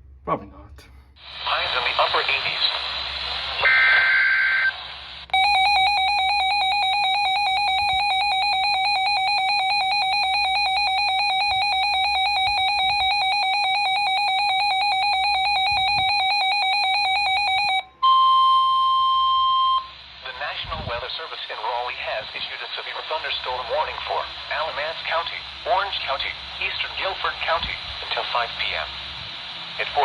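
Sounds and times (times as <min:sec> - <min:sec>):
two-tone digital data burst: 0:05.4 - 0:17.9
warbling electronic alarm tone: 0:05.4 - 0:19.9.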